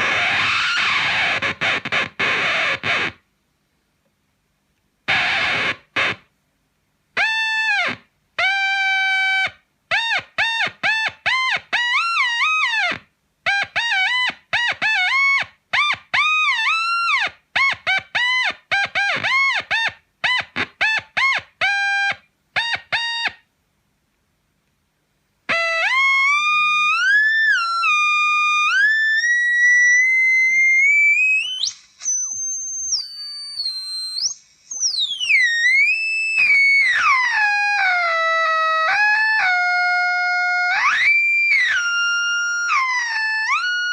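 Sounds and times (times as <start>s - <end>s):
sliding sustained fuzz tone: 25.5s - 43.9s.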